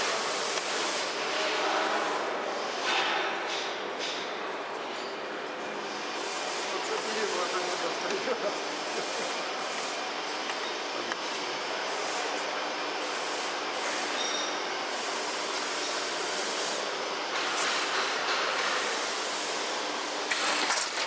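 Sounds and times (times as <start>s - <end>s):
bagging machine running: 6.0s - 21.0s
machine hiss: 13.0s - 20.7s.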